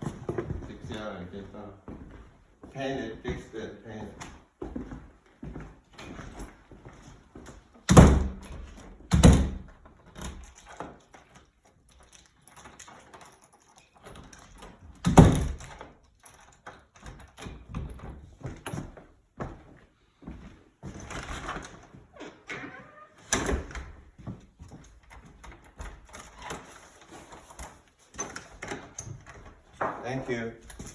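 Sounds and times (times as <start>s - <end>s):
door slamming: 7.9s - 10.4s, 15.0s - 15.7s, 22.3s - 24.0s.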